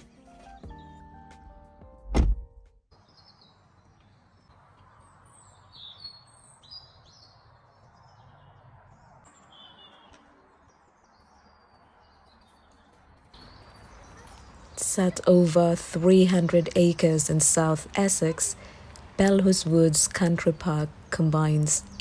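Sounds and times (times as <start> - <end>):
loud thump: 2.1 - 2.5
songbirds chirping and singing: 2.9 - 22.0.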